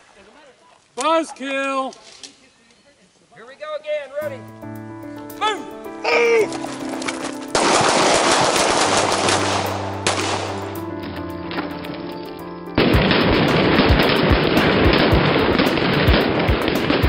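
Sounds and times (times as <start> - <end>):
heavy low thumps: 12.8 - 17.0
loud music with bass: 12.9 - 17.0.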